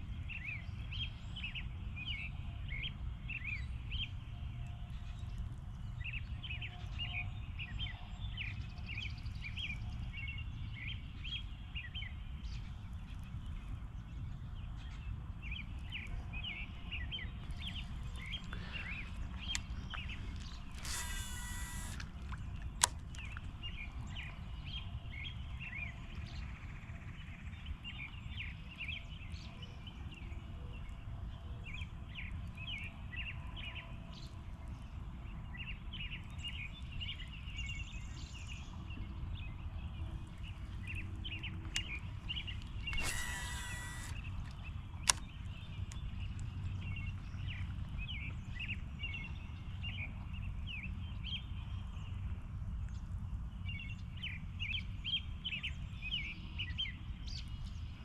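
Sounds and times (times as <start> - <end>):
small birds chirping: 4.9 - 26.5, 27.1 - 52.0
sharp click: 20.7 - 22.1, 42.9 - 44.3, 45.0 - 45.3.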